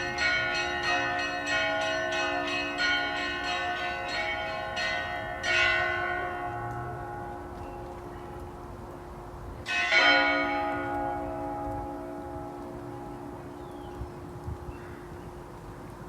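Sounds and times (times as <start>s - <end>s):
church bells ringing: 0.0s - 8.7s, 9.6s - 15.2s.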